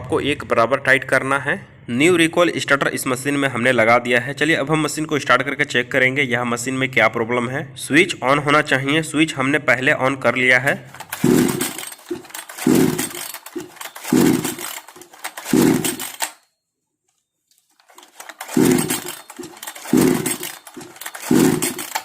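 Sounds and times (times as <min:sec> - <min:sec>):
chainsaw recoil starter pulls: 0:10.8 - 0:16.4, 0:17.6 - 0:22.0.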